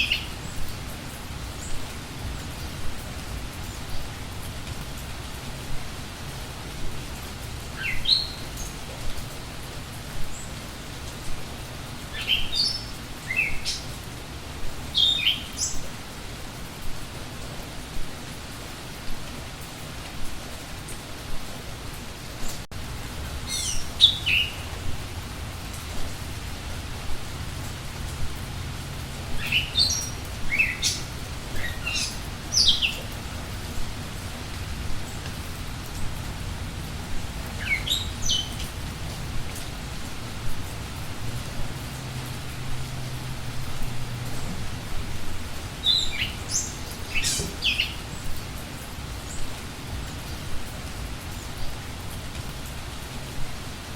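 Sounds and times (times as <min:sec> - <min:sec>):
songbird chirping: 0:00.0 - 0:00.8, 0:07.7 - 0:09.3, 0:12.0 - 0:14.1, 0:14.8 - 0:15.9, 0:23.4 - 0:26.1, 0:29.1 - 0:33.7, 0:37.2 - 0:38.8, 0:45.7 - 0:48.4
steady rain: 0:00.0 - 0:53.9.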